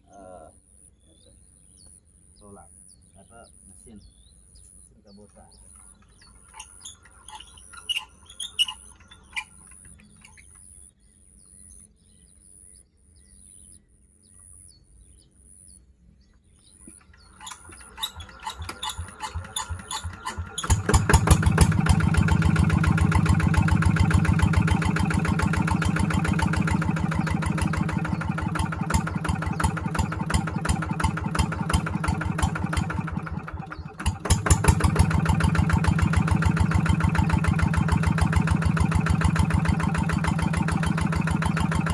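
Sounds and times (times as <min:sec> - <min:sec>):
birds chirping: 0:00.0 - 0:41.9
diesel engine starting and running: 0:05.9 - 0:10.5, 0:16.8 - 0:41.9.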